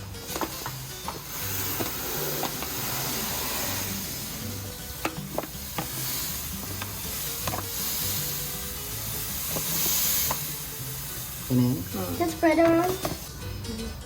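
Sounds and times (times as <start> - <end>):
dry sand pouring hiss: 0.0 - 13.7.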